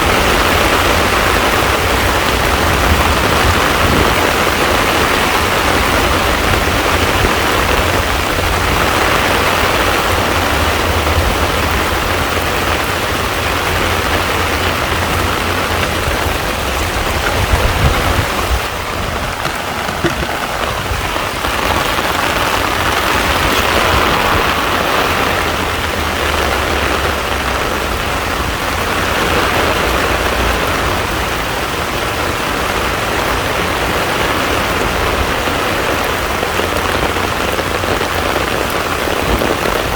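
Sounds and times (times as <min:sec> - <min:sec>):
heavy rain on a pond: 0:00.0 - 0:39.9
deep rumble: 0:06.5 - 0:28.6.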